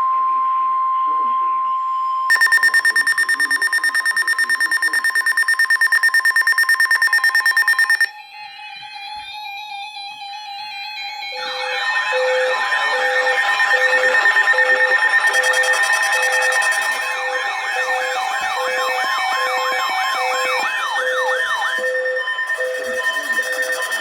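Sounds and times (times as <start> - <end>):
pulsing low beep: 2.3 - 8.1, 14.5 - 17.2
pulsing two-tone beep: 2.3 - 8.1, 13.8 - 17.9, 19.8 - 24.0
wavering siren-like wail: 11.4 - 24.0.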